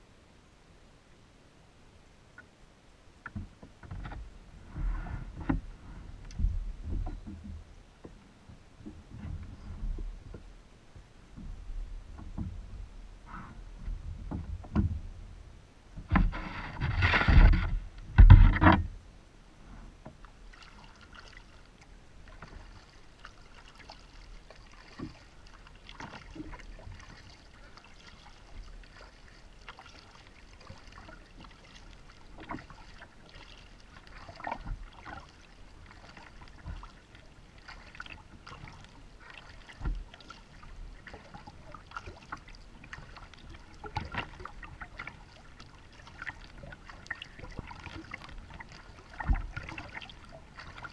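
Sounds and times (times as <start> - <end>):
light water sounds: 0.0 - 50.9
bumps against kayak hull: 16.0 - 19.0.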